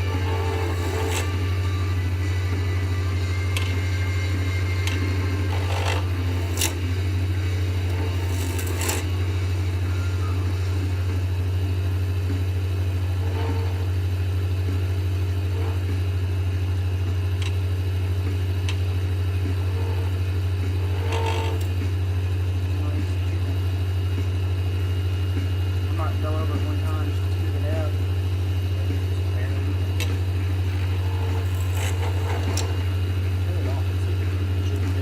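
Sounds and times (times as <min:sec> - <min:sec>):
turning tool scraping: 0:00.0 - 0:11.0, 0:12.8 - 0:14.2, 0:15.1 - 0:16.1, 0:18.6 - 0:22.0, 0:28.6 - 0:35.0
wood lathe humming: 0:00.0 - 0:35.0.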